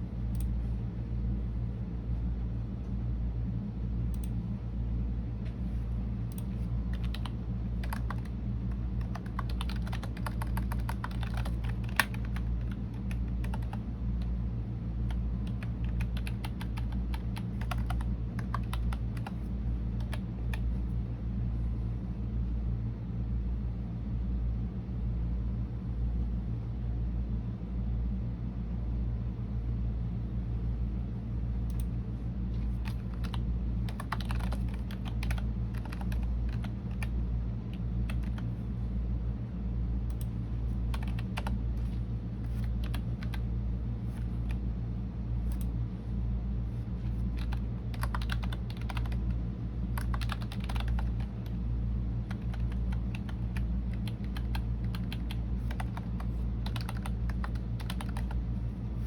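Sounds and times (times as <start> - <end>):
steady low hum: 0.0 - 59.0
typing on computer keyboard: 6.3 - 14.3, 15.1 - 20.8, 32.8 - 37.1, 38.0 - 38.5, 40.9 - 41.9, 42.5 - 43.4, 47.4 - 49.4, 50.0 - 51.6, 52.3 - 58.4.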